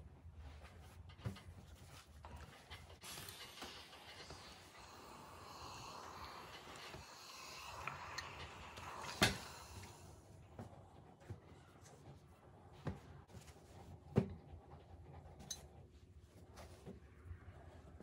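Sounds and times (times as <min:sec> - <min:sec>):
steady hiss: 0:03.0 - 0:10.2.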